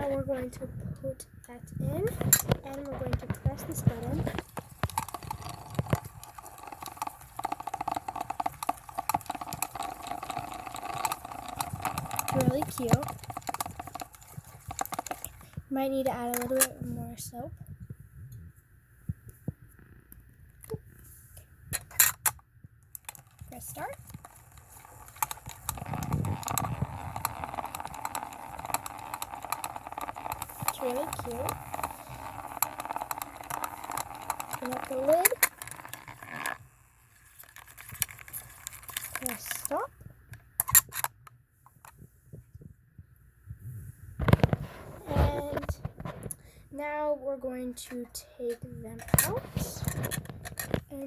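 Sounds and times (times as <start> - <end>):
clicking and rattling: 1.8 - 17.0, 21.7 - 42.0, 47.9 - 51.0
small motor humming: 2.0 - 15.7, 23.0 - 39.9.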